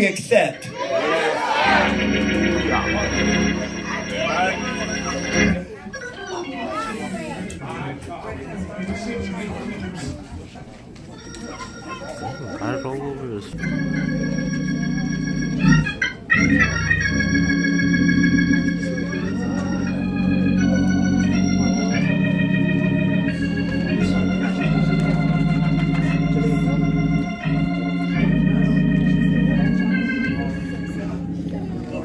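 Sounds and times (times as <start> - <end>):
church organ playing chords: 1.5 - 5.8, 13.5 - 32.0.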